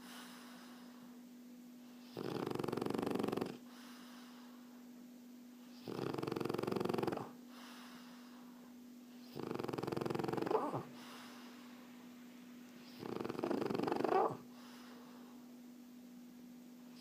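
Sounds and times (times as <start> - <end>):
faint steady hum: 0.0 - 17.0
dog snoring: 2.0 - 3.7, 5.7 - 7.4, 9.2 - 11.3, 12.8 - 14.9.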